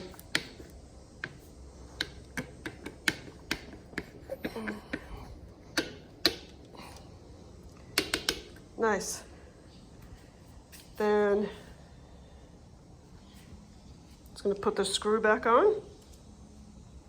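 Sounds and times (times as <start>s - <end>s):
plastic clicks and taps: 8.0s - 8.5s.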